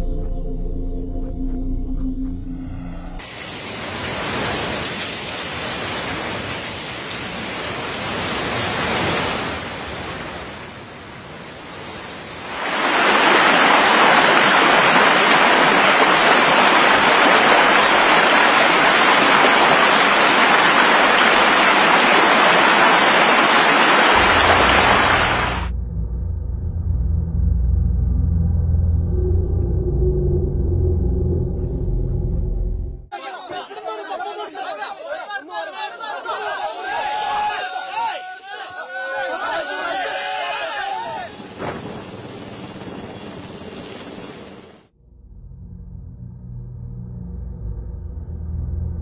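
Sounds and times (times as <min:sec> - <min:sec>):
heavy rushing water: 0:03.2 - 0:25.7.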